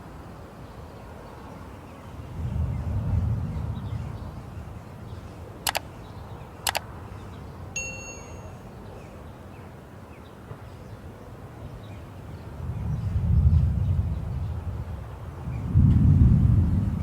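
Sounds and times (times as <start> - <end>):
sharp clicks: 5.6 - 5.9, 6.6 - 6.9
metal utensil ringing when struck: 7.8 - 8.6.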